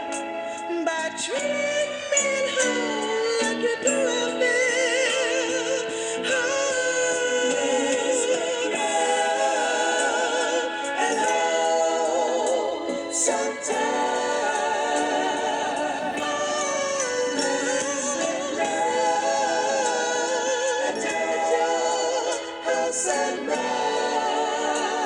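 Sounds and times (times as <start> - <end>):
slow soul record: 0.0 - 25.0
voices singing vibrato harmonies: 0.0 - 25.0.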